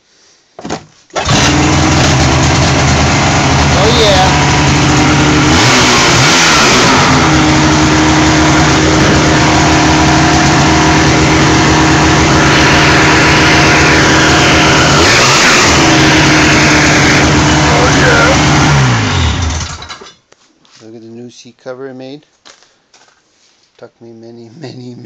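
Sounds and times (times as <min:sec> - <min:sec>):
snowmobile engine running: 0:01.2 - 0:19.7.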